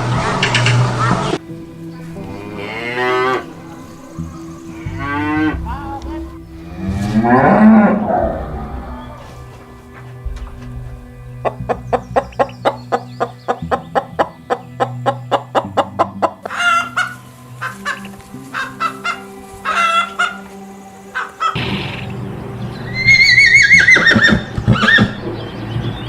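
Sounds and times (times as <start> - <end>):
chickens clucking: 0.0 - 23.1
chicken squawking calls: 15.8 - 20.5, 21.2 - 21.6.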